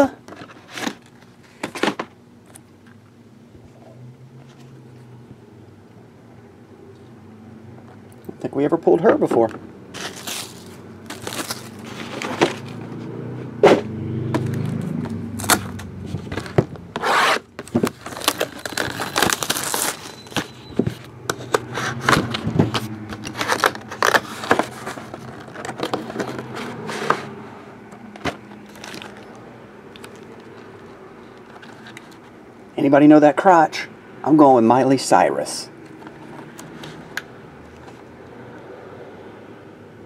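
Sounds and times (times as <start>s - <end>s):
photographs and packaging rustling: 0.0s - 2.7s, 9.1s - 13.0s, 14.3s - 32.4s, 35.9s - 38.1s.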